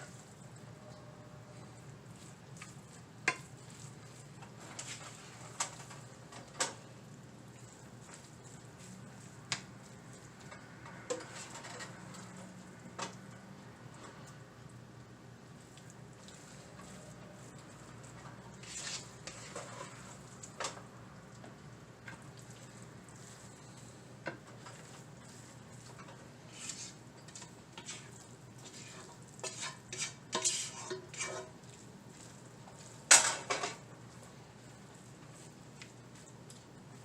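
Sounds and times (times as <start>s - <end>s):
metal utensil scraping a pot: 18.6s - 20.1s, 26.0s - 31.6s.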